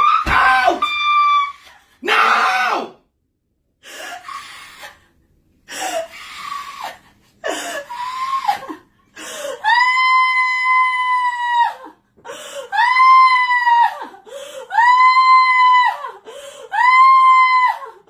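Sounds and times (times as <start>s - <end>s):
woman screaming: 0.0s - 2.9s, 9.6s - 11.9s, 12.7s - 14.1s, 14.7s - 18.0s.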